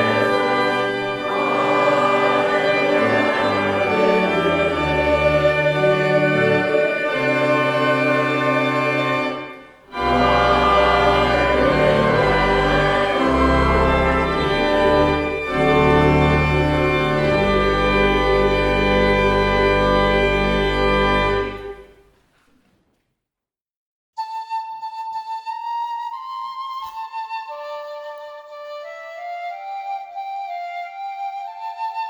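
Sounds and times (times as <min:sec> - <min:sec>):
organ chords: 0:00.0 - 0:22.0.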